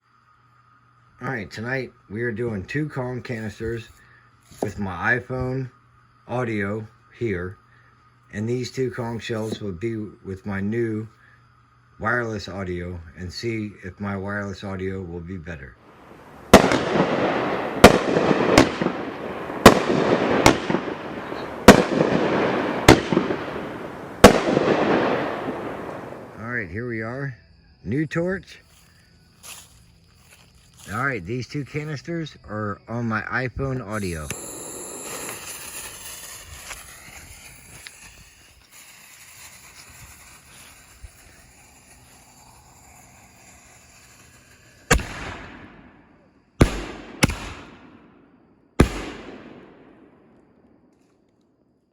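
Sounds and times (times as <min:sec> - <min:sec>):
fireworks bangs echoing: 0:15.9 - 0:26.4, 0:34.0 - 0:50.5.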